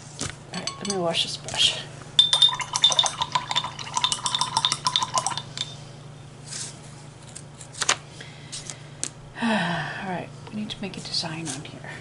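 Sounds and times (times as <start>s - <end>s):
paintbrush clinking in water jar: 0.6s - 1.1s, 2.2s - 5.8s.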